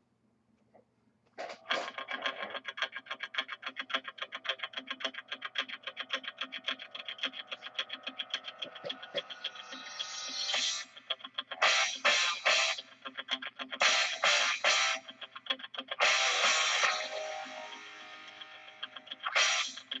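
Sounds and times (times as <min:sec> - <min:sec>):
fast pulsing music: 0:06.7 - 0:13.1, 0:15.9 - 0:20.0.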